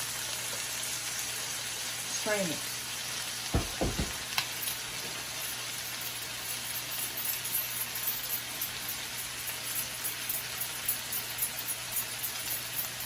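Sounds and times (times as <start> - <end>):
food frying in oil: 0.0 - 13.0.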